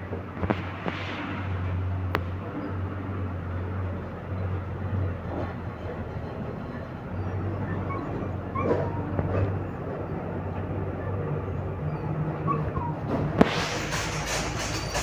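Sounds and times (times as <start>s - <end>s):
dog whimpering: 7.0s - 13.7s
rush of hiss: 13.4s - 15.0s.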